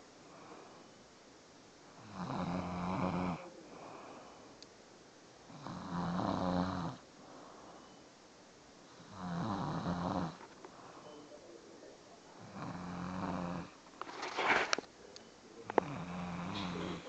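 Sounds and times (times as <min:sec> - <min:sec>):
person snoring loudly: 0:02.0 - 0:03.4, 0:05.5 - 0:07.0, 0:09.0 - 0:10.4, 0:12.4 - 0:13.8, 0:15.8 - 0:17.0.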